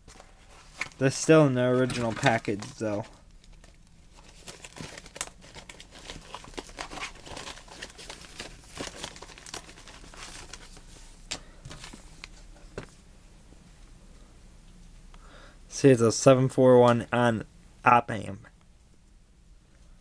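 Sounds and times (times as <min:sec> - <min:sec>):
plastic package crinkling: 0:00.0 - 0:10.9.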